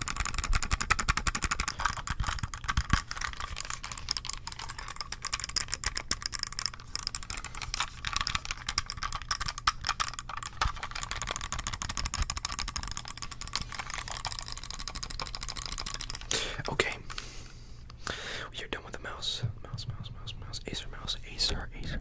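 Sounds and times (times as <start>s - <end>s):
fingertips tapping plastic: 0.0s - 17.3s.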